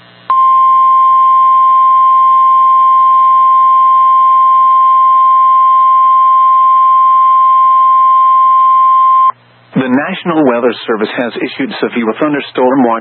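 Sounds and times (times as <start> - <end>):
faint hum: 0.0 - 13.0
steady warning alarm tone: 0.3 - 9.3.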